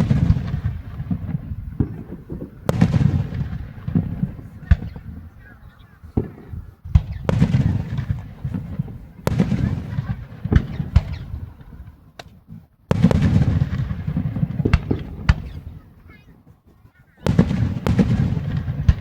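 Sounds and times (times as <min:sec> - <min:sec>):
fireworks banging: 0:00.0 - 0:19.0.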